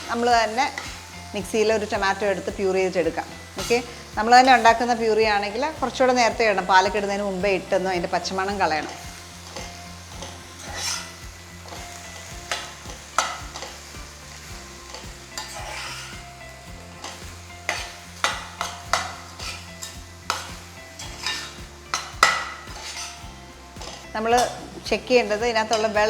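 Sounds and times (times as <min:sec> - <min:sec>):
spatula scraping a pan: 0:00.0 - 0:26.0
vegetables sizzling in a pan: 0:00.0 - 0:26.0.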